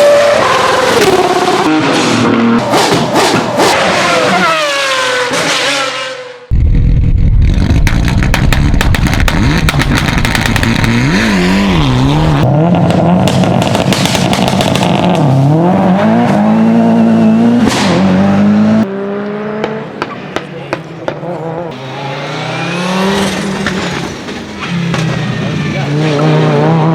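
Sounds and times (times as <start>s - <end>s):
car engine revving: 0.0s - 26.9s
exhaust popping and crackling: 6.5s - 15.5s.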